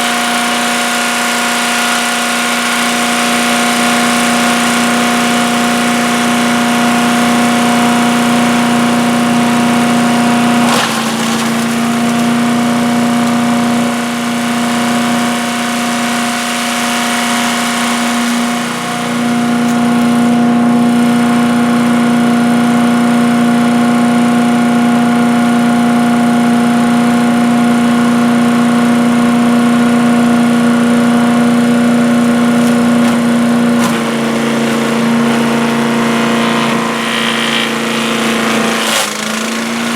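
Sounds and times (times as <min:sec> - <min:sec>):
material grinding: 0:00.0 - 0:22.2, 0:32.1 - 0:39.9
chipper-shredder engine running: 0:00.0 - 0:39.9.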